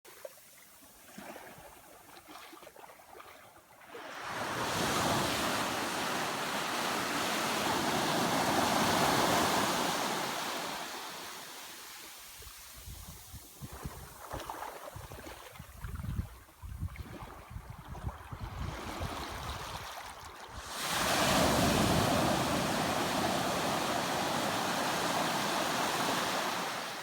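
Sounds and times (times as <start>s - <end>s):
ocean waves on a beach: 3.8s - 15.5s, 18.6s - 27.0s.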